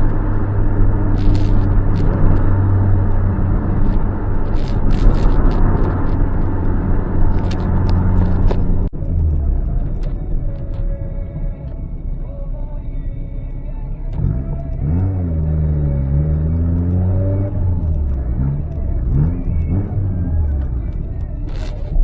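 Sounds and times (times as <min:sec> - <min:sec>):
sharp clicks: 0:00.0 - 0:11.0, 0:16.6 - 0:22.0
car exhaust engine running: 0:00.0 - 0:22.0.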